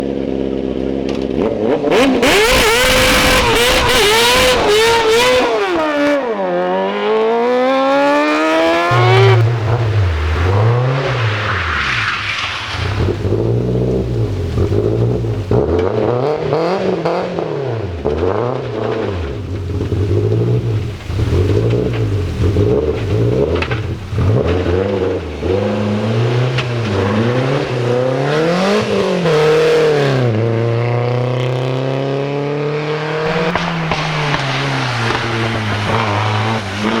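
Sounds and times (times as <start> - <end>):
car engines revving: 0.0 - 37.0
deep engine note rising and falling: 7.2 - 12.0, 19.8 - 37.0.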